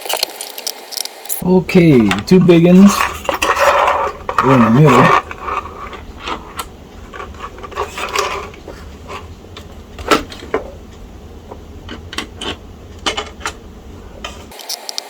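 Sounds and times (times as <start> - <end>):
steady low hum: 1.4 - 14.6
small parts clicking and tapping: 2.0 - 13.6.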